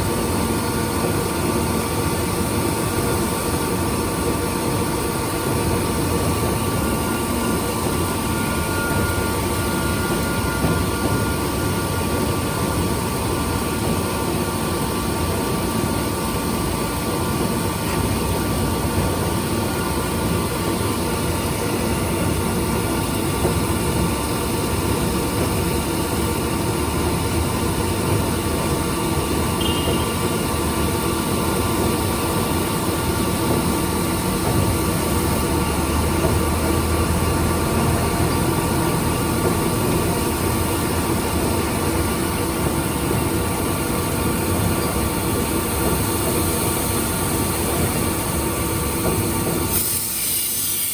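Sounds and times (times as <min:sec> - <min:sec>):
machine whining tones: 0:04.8 - 0:49.2.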